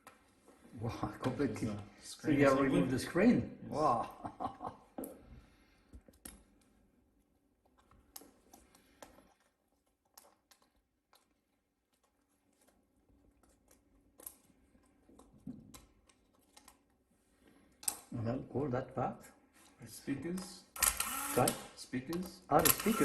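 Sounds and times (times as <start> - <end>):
small clicks and taps: 7.6 - 12.8.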